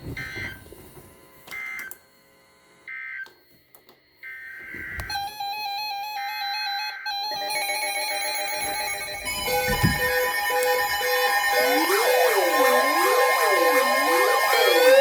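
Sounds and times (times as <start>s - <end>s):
screechy digital data bursts: 7.6s - 15.0s
stepping electronic tones: 8.5s - 15.0s.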